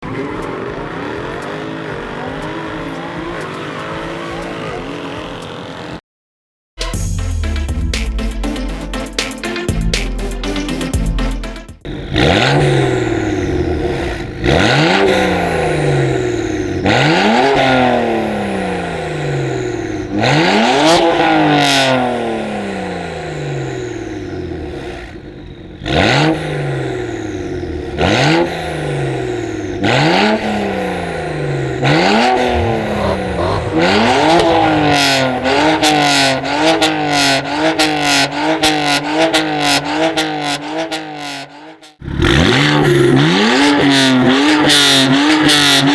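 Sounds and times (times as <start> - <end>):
car engine revving: 11.9 - 45.9.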